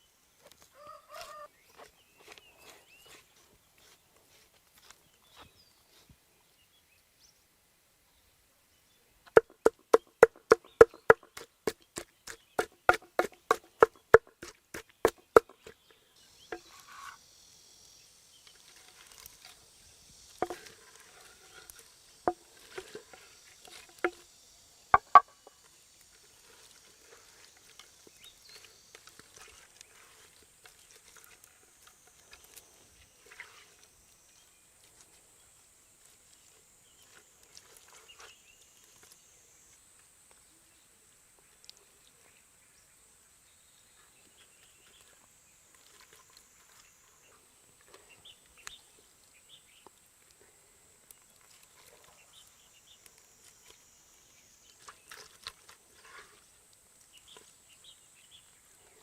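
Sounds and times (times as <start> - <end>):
faint high hiss: 0.0 - 0.8, 15.6 - 55.1
fast sharp knocks: 9.4 - 15.7, 25.0 - 25.3.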